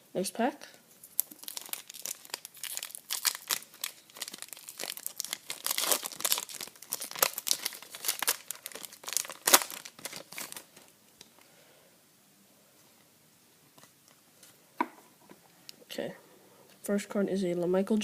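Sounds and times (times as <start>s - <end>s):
wrapper crinkling and tearing: 1.0s - 10.9s.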